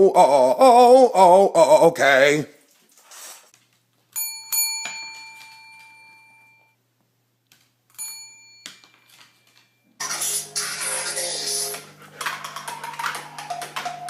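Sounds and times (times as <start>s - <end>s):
small bell ringing: 4.2s - 6.8s, 8.0s - 9.8s.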